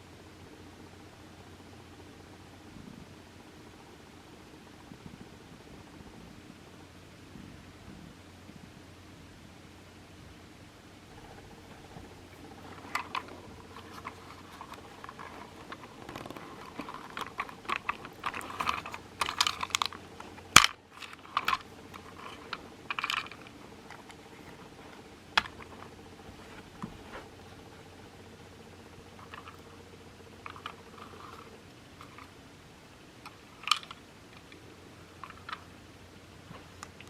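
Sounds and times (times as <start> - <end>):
faint steady hum: 0.0 - 37.0
plastic toy parts clicking and rattling: 11.1 - 26.0, 29.1 - 29.7, 30.4 - 32.4, 33.2 - 35.7.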